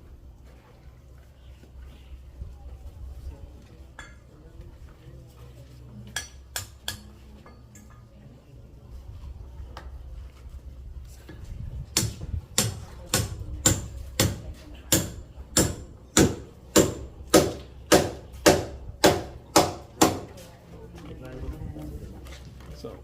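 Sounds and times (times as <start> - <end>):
rhythmic hammering: 12.0 - 20.4.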